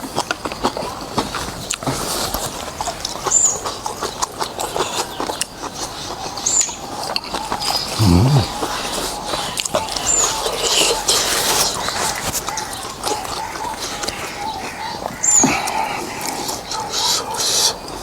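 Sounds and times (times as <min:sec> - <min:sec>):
wet chewing and slurping: 0:00.0 - 0:18.0
bird chirp: 0:03.1 - 0:18.0.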